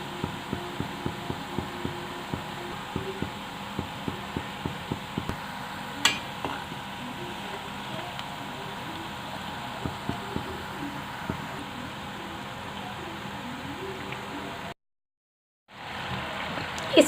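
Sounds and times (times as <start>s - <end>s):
dough balls deep-frying in oil: 15.7s - 17.0s.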